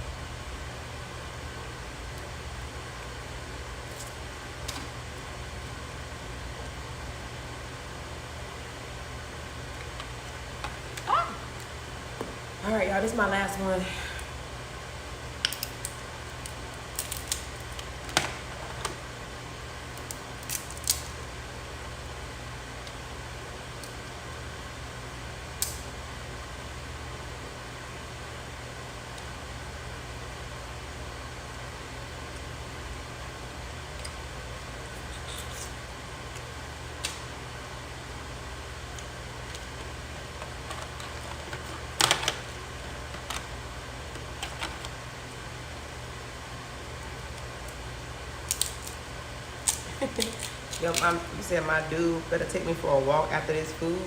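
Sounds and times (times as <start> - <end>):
steady low hum: 0.0 - 54.0
crab shells cracking: 15.4 - 17.9, 19.9 - 21.1, 48.4 - 49.0, 49.6 - 51.0.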